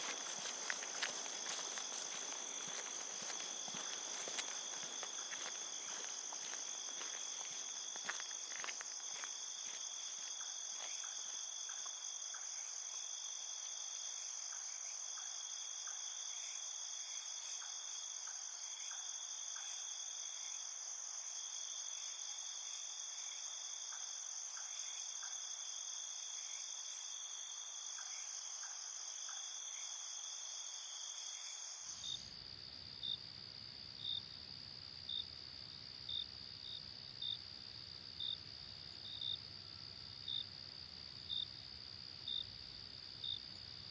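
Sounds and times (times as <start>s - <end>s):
crickets trilling: 0.0s - 32.3s
single cricket chirping: 0.0s - 33.2s, 38.2s - 43.9s.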